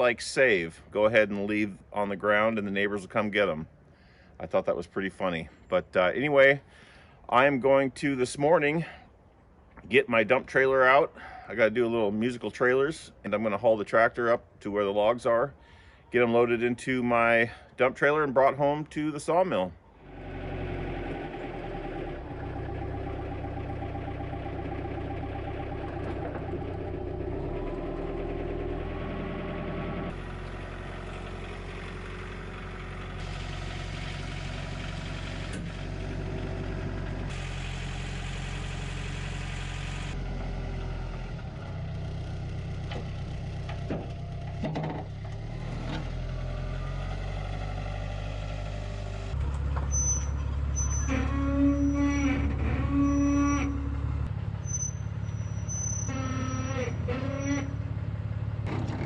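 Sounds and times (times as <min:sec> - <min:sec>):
vehicle engine idling: 0:19.8 - 0:59.0.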